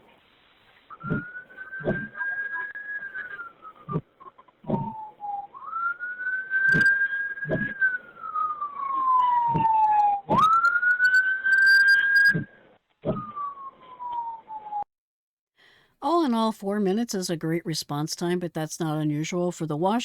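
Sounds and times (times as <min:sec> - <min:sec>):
emergency vehicle siren wailing: 0:06.7 - 0:12.3, 0:13.1 - 0:14.9.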